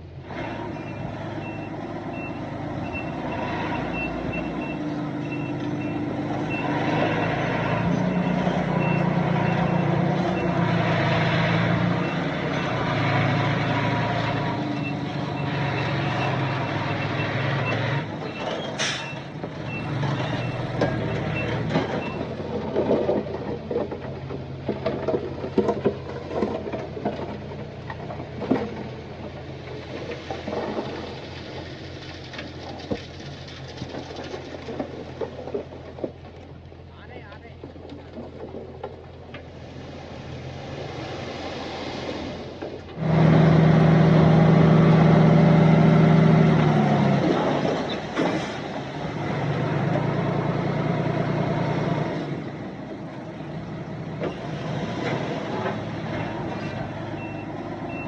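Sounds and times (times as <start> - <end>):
diesel engine running: 0.0 - 58.0
truck reversing alarm beeping: 0.7 - 11.2, 11.9 - 14.0, 14.6 - 22.4, 56.6 - 58.0.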